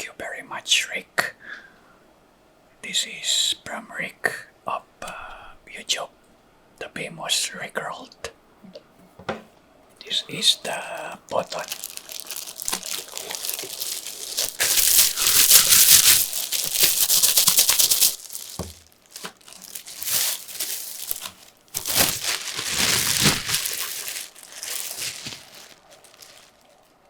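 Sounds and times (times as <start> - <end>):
packaging crinkling and rustling: 10.7 - 27.0.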